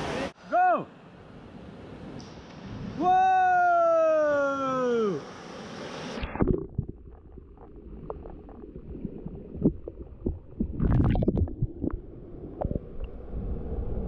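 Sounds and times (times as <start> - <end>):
muffled rushing water rumble: 5.3 - 14.0.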